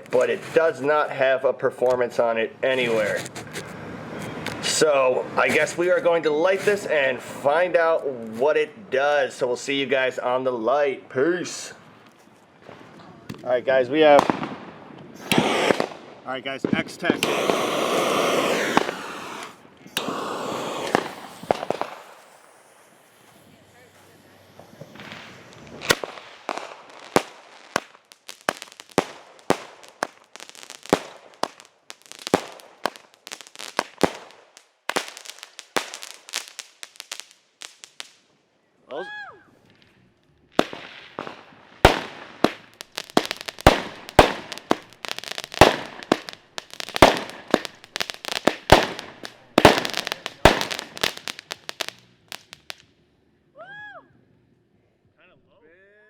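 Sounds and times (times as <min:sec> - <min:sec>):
firework bangs and crackling: 0:00.0 - 0:02.0, 0:02.6 - 0:07.8, 0:12.6 - 0:38.2, 0:40.6 - 0:52.9.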